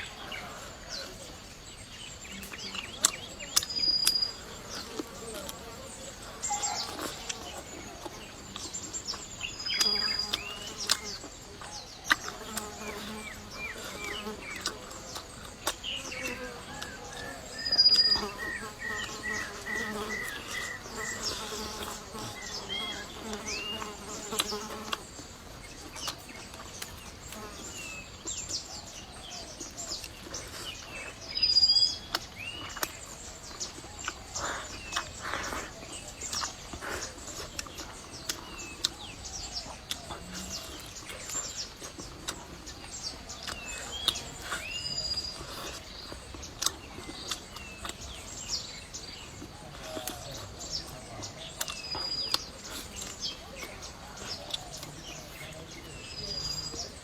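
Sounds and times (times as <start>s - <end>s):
insects buzzing: 0.0s - 28.4s
small chewing clicks: 0.4s - 57.0s
high bird chirps: 2.3s - 4.4s.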